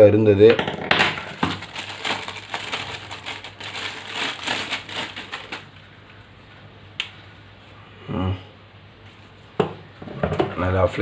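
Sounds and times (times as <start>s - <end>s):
wrapping crinkling: 1.2s - 5.9s.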